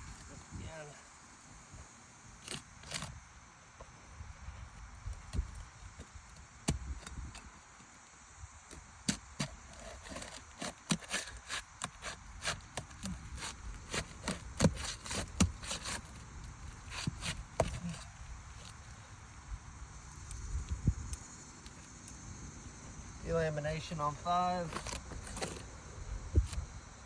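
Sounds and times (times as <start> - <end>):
roof shingles snapping and scraping: 9.1 - 18.7, 24.7 - 25.7.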